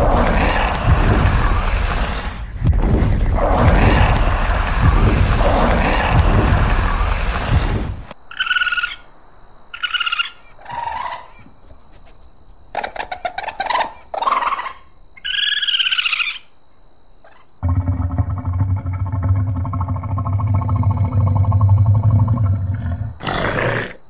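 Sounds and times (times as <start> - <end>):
rough noisy animal sound: 0.0 - 9.1, 17.2 - 24.0.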